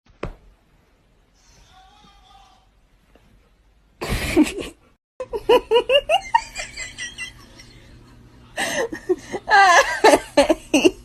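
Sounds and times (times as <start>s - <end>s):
person laughing: 8.6s - 11.0s.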